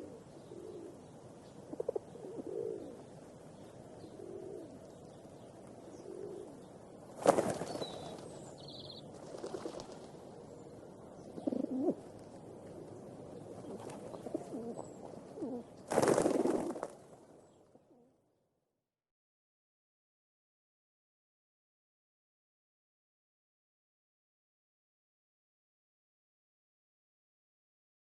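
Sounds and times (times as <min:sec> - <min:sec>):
pigeons cooing: 0:00.0 - 0:03.1, 0:03.9 - 0:05.0, 0:05.8 - 0:08.5, 0:09.2 - 0:16.9.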